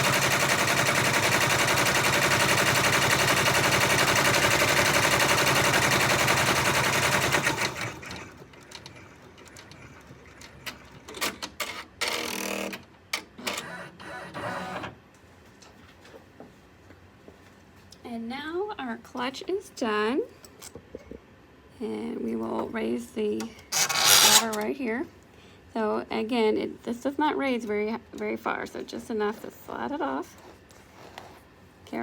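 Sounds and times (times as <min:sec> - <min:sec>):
embroidery machine stitching: 0:00.0 - 0:10.3, 0:23.7 - 0:24.6.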